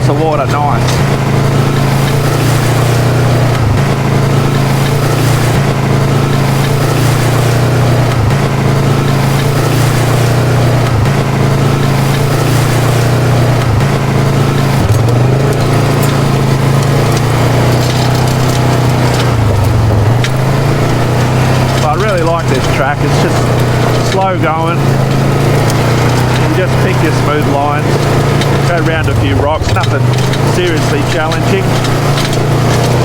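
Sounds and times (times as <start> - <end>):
engine running under load: 0.0 - 33.0.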